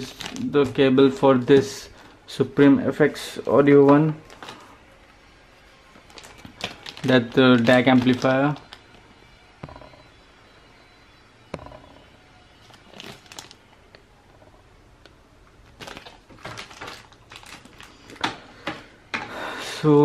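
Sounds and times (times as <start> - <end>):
packaging rustling: 0.0 - 2.2, 6.0 - 9.1, 12.6 - 13.8, 15.6 - 18.5.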